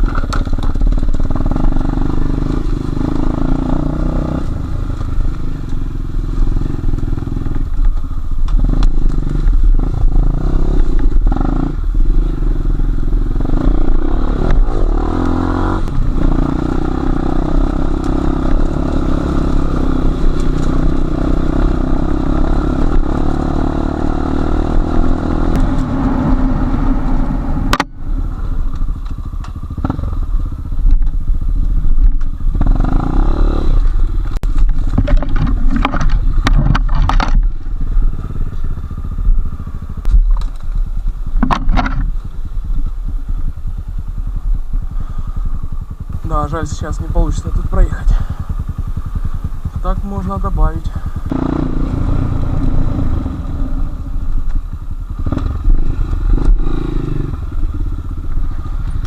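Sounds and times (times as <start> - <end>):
motorcycle engine revving: 0.0 - 59.0
bike clattering over rough ground: 34.4 - 37.8, 40.0 - 43.0.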